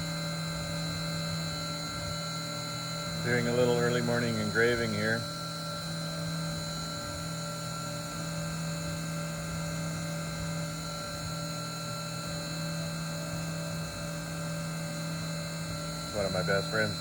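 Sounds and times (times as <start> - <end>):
milling machine spindle humming: 0.0 - 7.4, 12.9 - 17.0.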